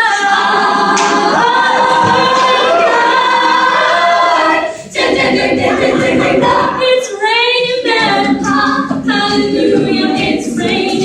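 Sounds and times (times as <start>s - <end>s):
female a cappella singing: 0.0s - 11.0s.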